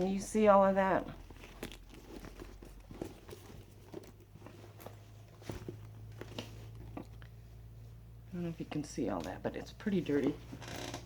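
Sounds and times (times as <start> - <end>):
handbag clicks and rustles: 0.1 - 7.3.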